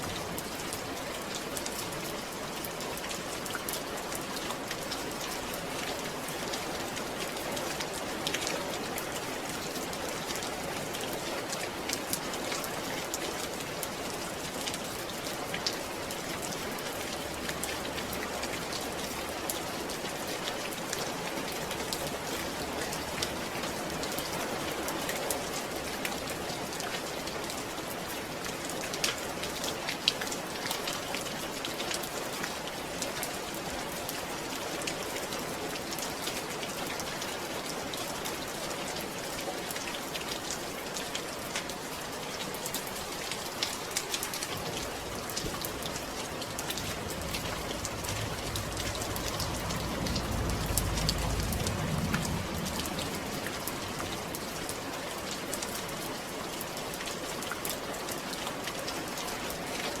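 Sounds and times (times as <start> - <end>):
steady rain falling: 0.0 - 60.0
low rumble: 45.1 - 54.4.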